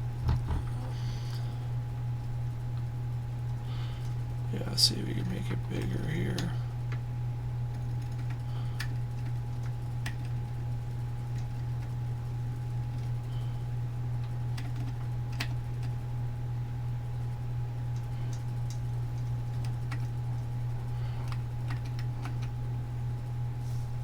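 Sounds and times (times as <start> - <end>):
low electrical hum: 0.0 - 24.0
light clicks of controls: 5.2 - 7.1, 17.9 - 22.7.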